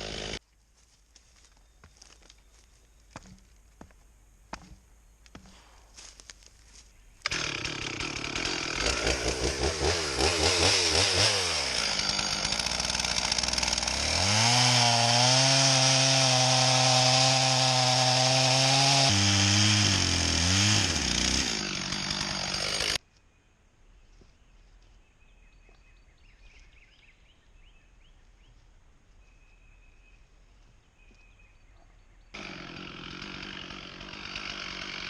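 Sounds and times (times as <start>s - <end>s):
chainsaw revving and cutting: 0.0s - 0.4s, 7.2s - 23.0s, 32.4s - 35.0s.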